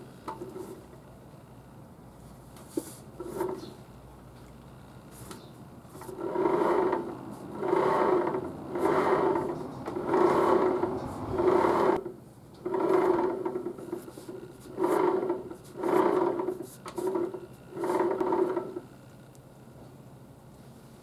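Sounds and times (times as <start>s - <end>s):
small motor whirring in bursts: 6.1s - 12.0s.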